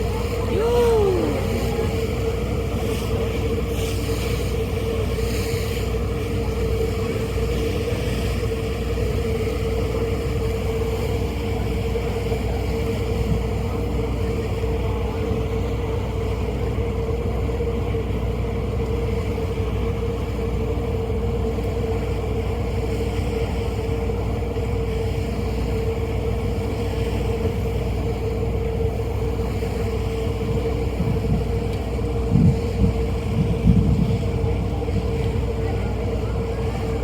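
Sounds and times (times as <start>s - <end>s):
ferry engines droning: 0.0s - 22.8s, 32.9s - 37.0s
wind and water noise: 0.0s - 37.0s.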